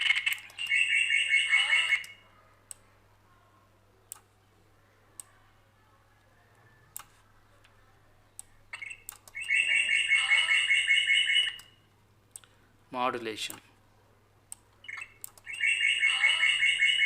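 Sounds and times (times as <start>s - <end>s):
chirping bird call with reverb: 0.5s - 2.2s, 8.8s - 11.8s, 14.9s - 17.0s
sharp clicks: 4.1s - 4.3s, 8.4s - 9.5s, 14.5s - 15.5s.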